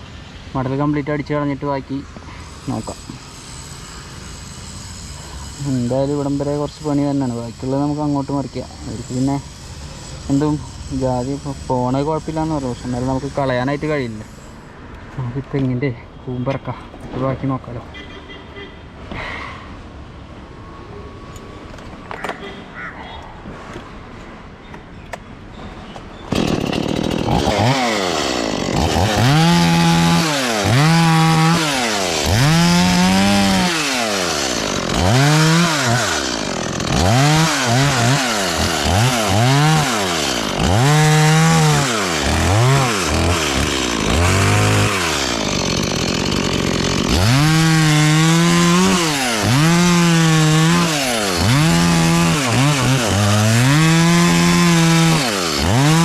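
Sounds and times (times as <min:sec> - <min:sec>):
chainsaw revving: 0:26.3 - 0:56.0.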